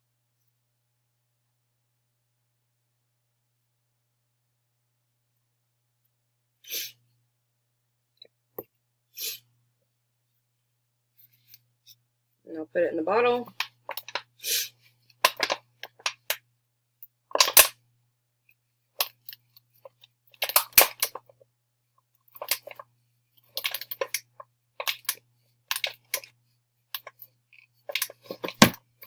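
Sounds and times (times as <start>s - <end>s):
paper and plastic crinkling: 27.9s - 28.8s.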